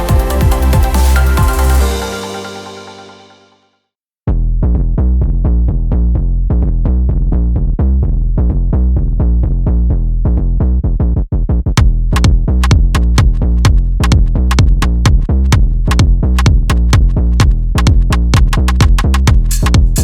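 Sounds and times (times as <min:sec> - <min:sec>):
electronic dance music: 0:00.0 - 0:03.6, 0:18.3 - 0:20.0.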